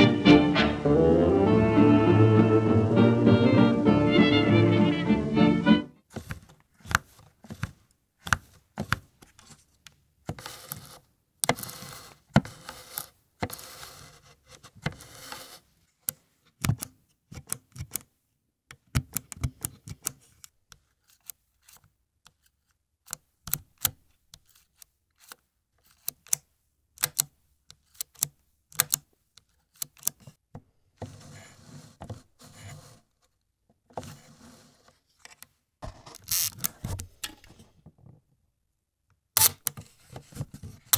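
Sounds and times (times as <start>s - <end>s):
scraping and rubbing: 31.0s - 33.3s, 33.9s - 37.8s.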